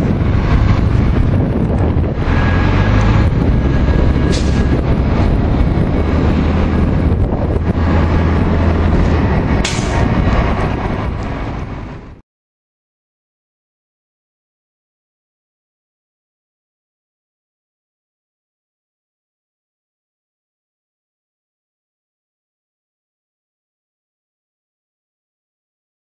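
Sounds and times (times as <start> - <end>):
bus engine rumbling: 0.0 - 12.2
wind buffeting microphone: 0.0 - 12.2.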